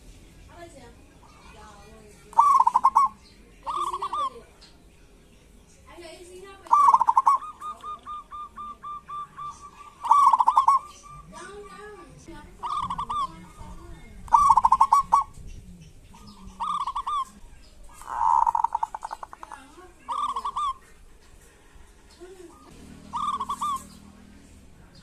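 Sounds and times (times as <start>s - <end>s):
dove rattling trilled call: 0.7s - 4.8s, 5.4s - 21.6s, 22.2s - 25.0s
dove soft low coos: 12.6s - 21.8s, 22.5s - 23.9s.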